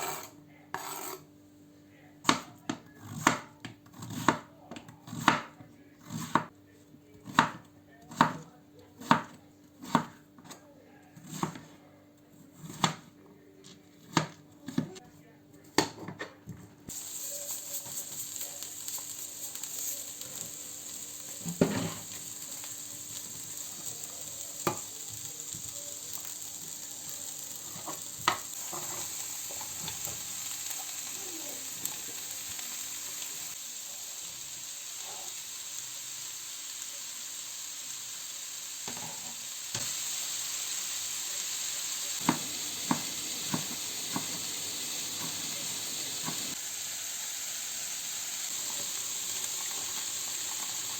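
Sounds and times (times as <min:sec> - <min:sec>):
food sizzling in a pan: 0:16.9 - 0:50.9.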